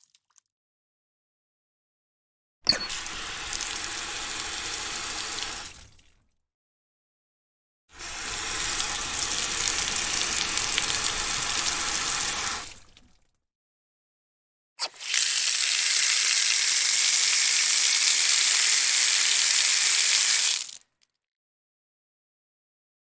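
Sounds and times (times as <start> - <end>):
faucet click: 2.7 - 3.0
water running from faucet: 2.9 - 5.9, 8.0 - 13.0, 14.8 - 20.8.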